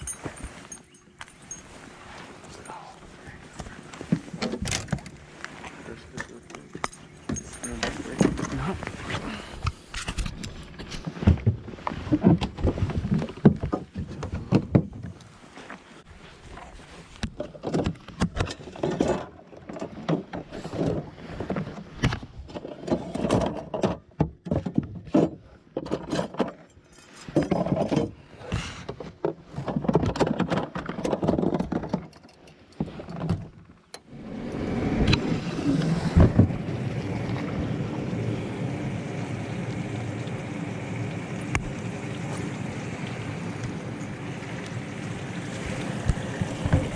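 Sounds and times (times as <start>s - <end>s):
gear clattering in metal boat: 0.0s - 9.0s, 17.3s - 21.8s, 22.4s - 28.2s, 28.9s - 34.2s
boat running noise: 0.0s - 18.2s, 33.9s - 46.9s.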